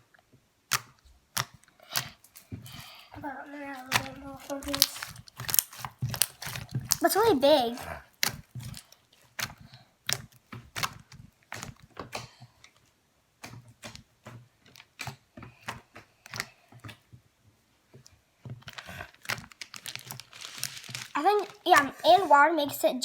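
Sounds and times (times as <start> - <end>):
slime squished by hand: 0.7 - 17.1, 18.6 - 22.3.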